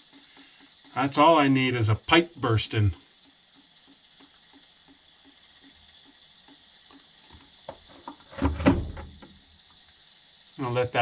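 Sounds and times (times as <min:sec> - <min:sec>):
water dripping into a bucket: 0:00.0 - 0:08.3
loud bump: 0:08.4 - 0:09.1.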